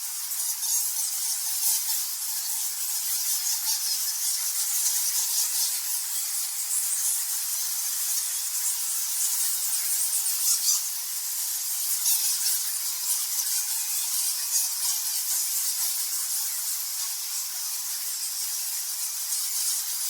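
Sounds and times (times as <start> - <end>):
bats chittering and squeaking: 0.2 - 20.0.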